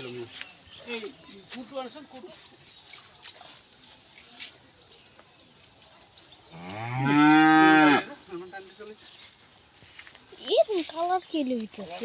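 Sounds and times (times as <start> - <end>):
cow mooing: 6.6 - 8.1.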